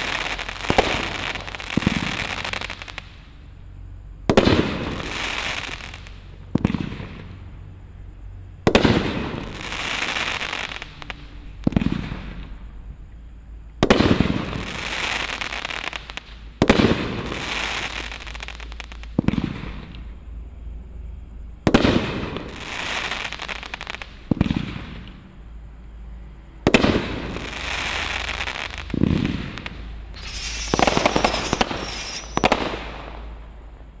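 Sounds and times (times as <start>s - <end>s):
fireworks crackling: 0.0s - 3.4s, 4.3s - 7.4s, 8.7s - 12.6s, 13.8s - 20.0s, 21.7s - 25.3s, 26.6s - 34.0s
fireworks bangs: 13.9s - 19.9s, 26.7s - 34.0s.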